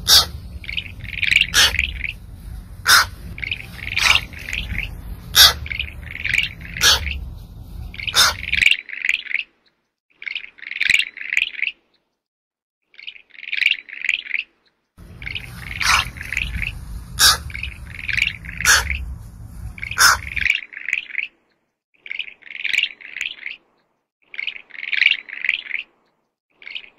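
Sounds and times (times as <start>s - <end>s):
high-pitched chirping calls: 0.0s - 8.6s, 15.0s - 20.5s
low rumbling noise: 0.0s - 8.6s, 15.0s - 20.5s.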